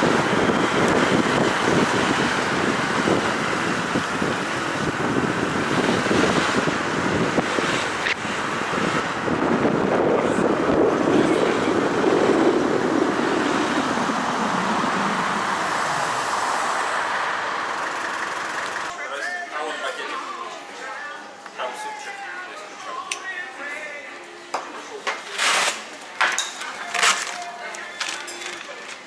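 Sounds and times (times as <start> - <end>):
vehicle engine running: 0.0 - 18.9
wind rushing over microphone: 0.0 - 18.9.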